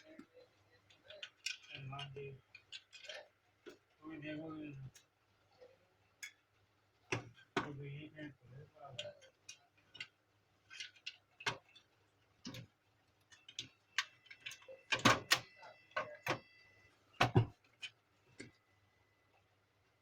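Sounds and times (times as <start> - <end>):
plastic parts clicking and knocking: 0.0 - 4.0, 7.0 - 7.8, 9.0 - 16.5, 17.2 - 18.6.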